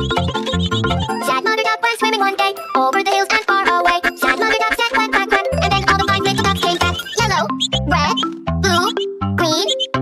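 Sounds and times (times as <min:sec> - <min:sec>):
low bass notes: 0:07.2 - 0:10.0.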